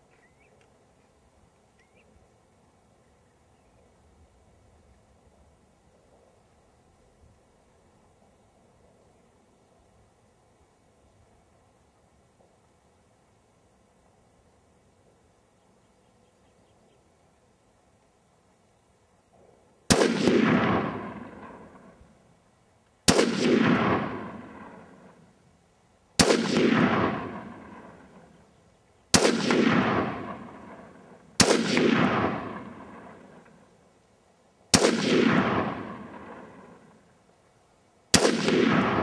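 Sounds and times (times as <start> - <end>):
rifle shots: 19.9 - 22.1, 23.1 - 25.2, 26.2 - 28.4, 29.1 - 33.6, 34.7 - 37.0, 38.1 - 39.0.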